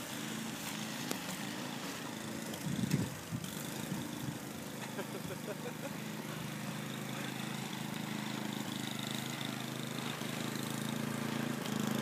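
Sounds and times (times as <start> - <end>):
motor vehicle engine running: 0.0 - 12.0.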